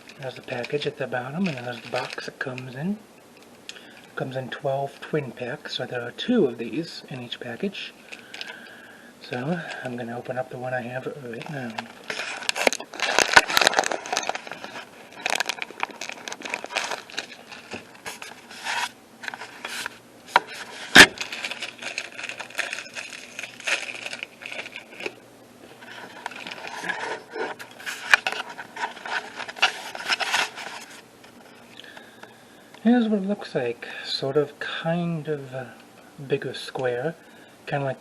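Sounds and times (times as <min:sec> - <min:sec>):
plastic wrapper crinkling: 0:00.0 - 0:02.8, 0:08.0 - 0:32.0.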